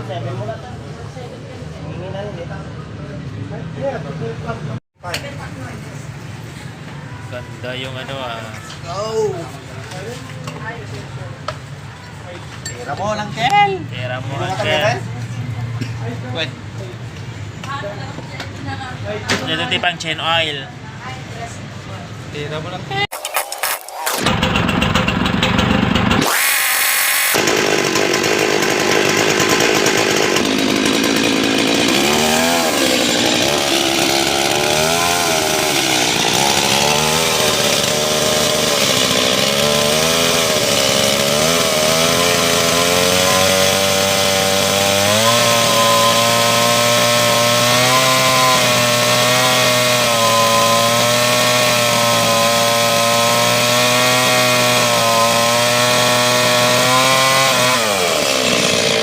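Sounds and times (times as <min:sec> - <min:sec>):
chainsaw cutting wood: 0:23.1 - 0:59.0.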